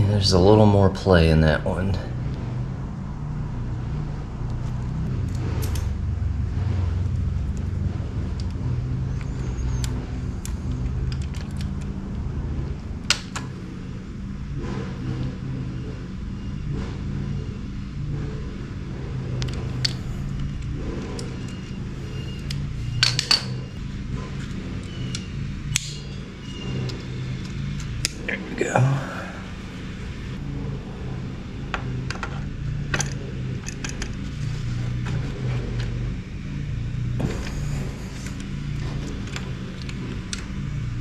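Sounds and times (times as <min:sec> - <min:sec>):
steady low hum: 0:00.0 - 0:41.0
metal tools clinking: 0:21.1 - 0:23.8.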